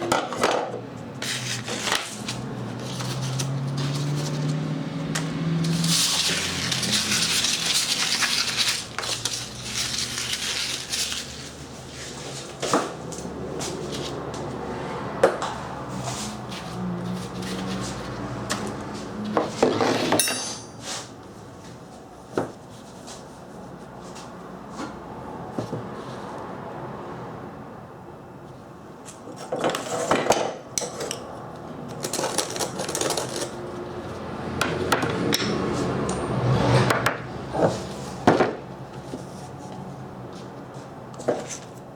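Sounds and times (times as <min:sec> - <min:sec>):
metal parts clinking and scraping: 0:19.8 - 0:20.8.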